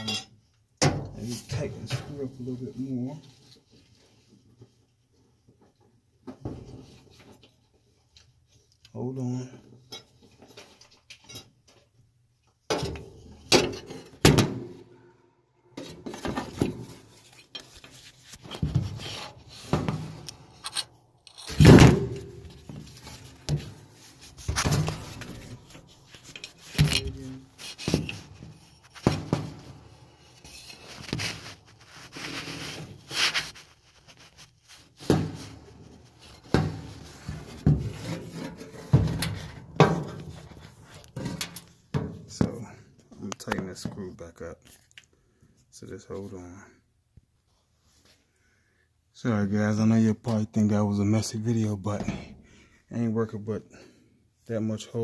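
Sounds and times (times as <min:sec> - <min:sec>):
hands scraping metal: 0:15.8 - 0:39.4.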